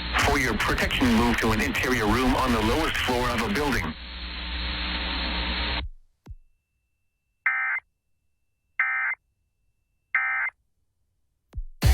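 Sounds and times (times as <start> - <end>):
buzzy digital code bursts: 0.0 - 3.9
static hiss: 0.0 - 5.8.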